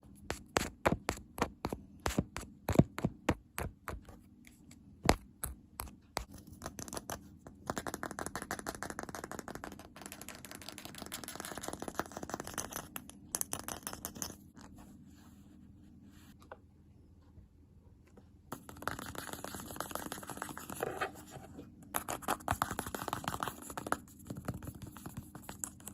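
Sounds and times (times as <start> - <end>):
fast steady scratching: 18.5 - 21.3.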